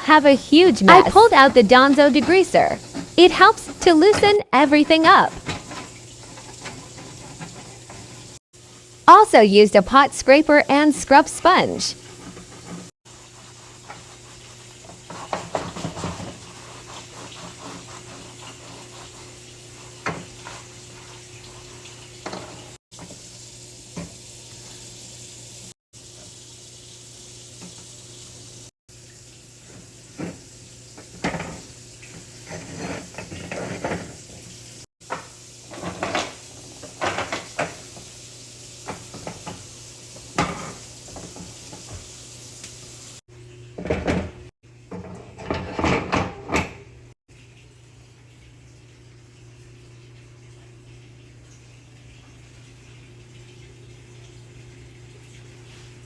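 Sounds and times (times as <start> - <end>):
sponge scrubbing a pot: 12.2 - 22.0
pots and pans clinking: 35.0 - 38.0, 38.8 - 42.1, 43.8 - 46.8.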